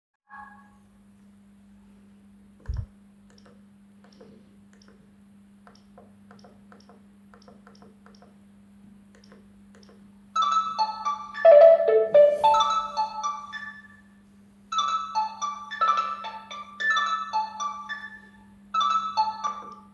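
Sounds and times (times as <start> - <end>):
steady low hum: 1.3 - 7.3
short thump: 2.6 - 2.9
phone ringtone melody: 10.4 - 13.8.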